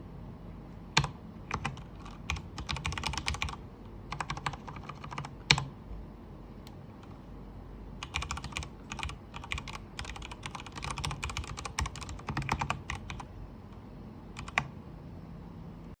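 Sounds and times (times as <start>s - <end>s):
mechanical keyboard typing: 1.0s - 5.8s, 8.0s - 13.4s, 14.3s - 14.7s.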